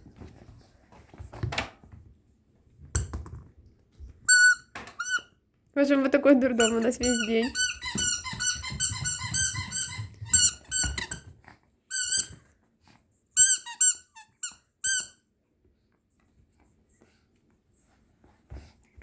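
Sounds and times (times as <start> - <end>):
squeaky toy squeaks: 4.3 - 5.3, 6.5 - 11.2, 11.9 - 12.4, 13.4 - 15.2.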